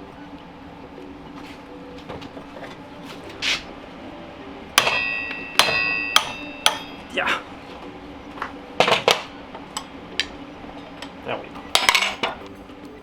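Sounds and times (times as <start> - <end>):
hammer striking metal: 4.7 - 7.4, 8.8 - 10.4, 11.0 - 12.4.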